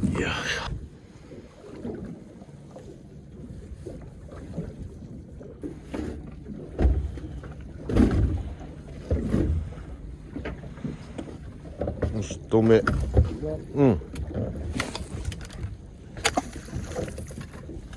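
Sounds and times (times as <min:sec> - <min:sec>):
water rushing: 0:00.0 - 0:02.3
boat hull slapping waves: 0:00.0 - 0:17.9.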